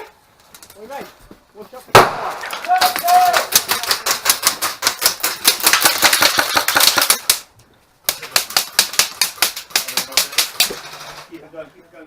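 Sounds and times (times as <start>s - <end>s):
airsoft guns firing rapidly: 2.0s - 7.4s.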